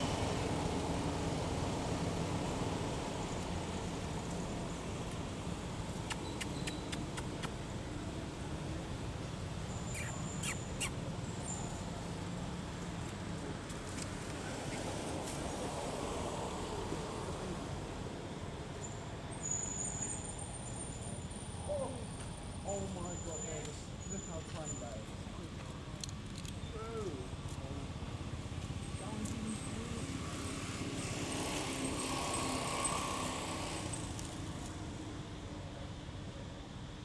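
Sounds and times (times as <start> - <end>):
high chirps: 9.9 - 10.9.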